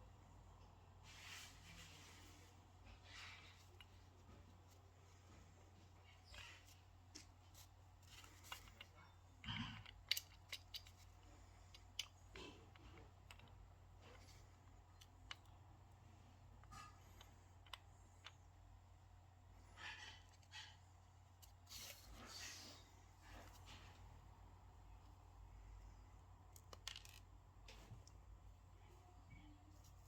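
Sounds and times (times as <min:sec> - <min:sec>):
low steady hum: 0:00.0 - 0:30.0
small parts clicking and scraping: 0:03.0 - 0:04.8, 0:06.0 - 0:18.6, 0:26.5 - 0:28.2.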